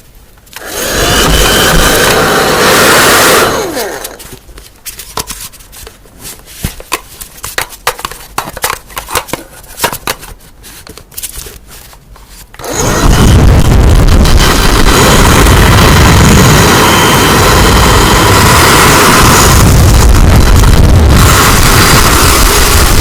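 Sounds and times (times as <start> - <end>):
loud steady whirring: 0.6 - 4.4, 12.5 - 23.0
small objects tapping and scraping: 4.0 - 12.5.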